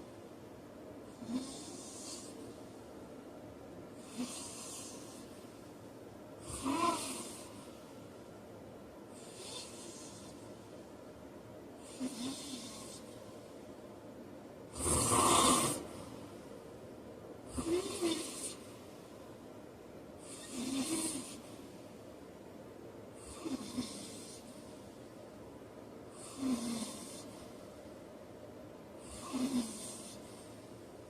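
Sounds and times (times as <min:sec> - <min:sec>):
man snoring: 0:01.2 - 0:02.4, 0:04.0 - 0:05.3, 0:06.4 - 0:07.5, 0:11.9 - 0:13.1, 0:14.7 - 0:15.9, 0:17.5 - 0:18.6, 0:20.2 - 0:21.4, 0:23.2 - 0:24.5, 0:26.2 - 0:27.4, 0:29.0 - 0:30.3.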